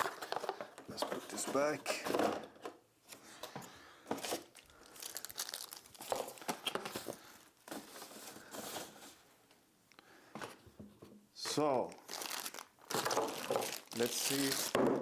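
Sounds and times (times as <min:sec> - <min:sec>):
packaging rustling and crackling: 0:00.0 - 0:02.6, 0:04.0 - 0:09.2, 0:11.5 - 0:15.0.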